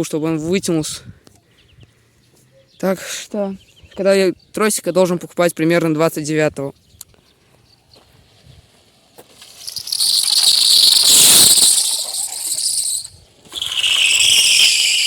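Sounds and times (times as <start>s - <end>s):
bicycle tyre squealing: 9.2s - 15.0s.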